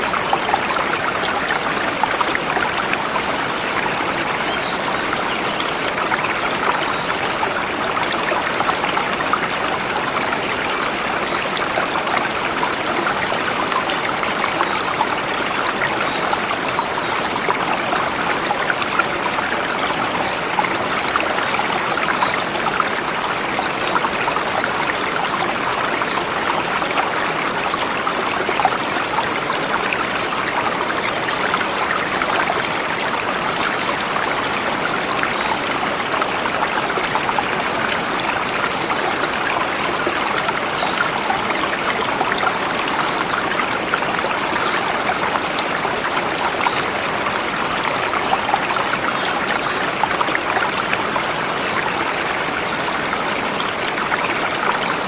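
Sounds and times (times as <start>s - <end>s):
river flowing over rocks: 0.0s - 55.0s.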